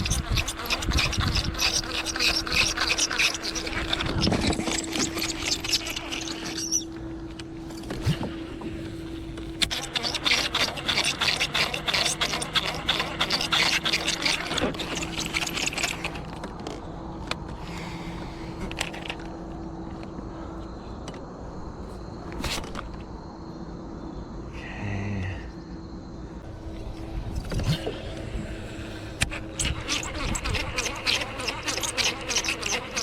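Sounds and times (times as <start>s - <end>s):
fishing reel cranking and grinding: 0.0s - 16.7s, 27.4s - 33.0s.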